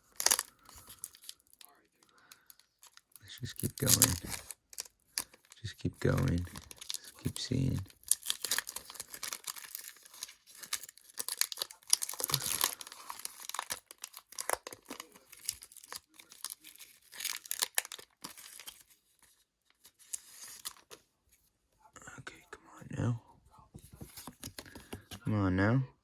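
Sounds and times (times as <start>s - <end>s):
foil wrapper tearing and crinkling: 0.0s - 18.9s.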